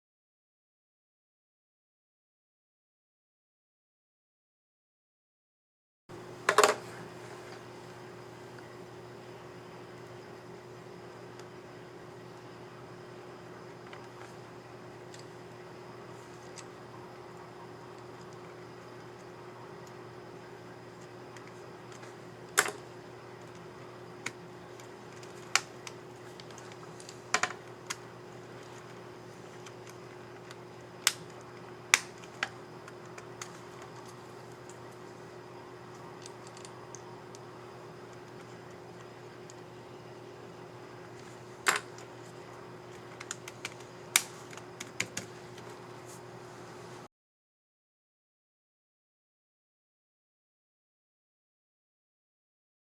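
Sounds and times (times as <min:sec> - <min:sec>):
laptop keys clicking: 0:43.0 - 0:45.8.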